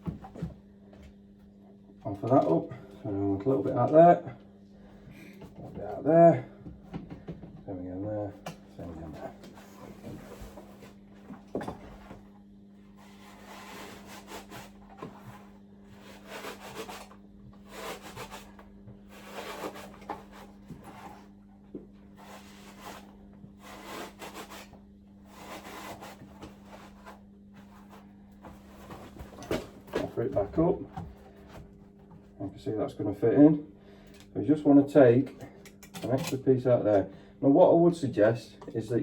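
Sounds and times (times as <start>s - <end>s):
blade rasping through insulation: 13.0s - 21.3s, 22.1s - 30.1s.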